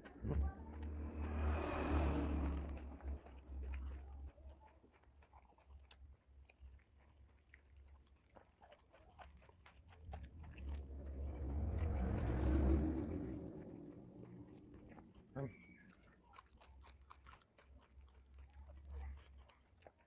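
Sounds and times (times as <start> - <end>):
low rumble: 0.0 - 4.0, 10.0 - 16.0
chewing crunchy vegetables: 0.0 - 11.1, 13.7 - 20.0.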